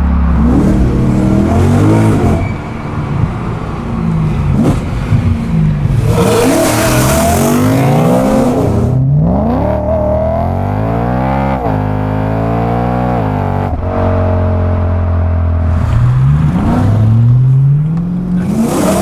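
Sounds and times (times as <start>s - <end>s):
car engine accelerating hard: 4.3s - 19.0s.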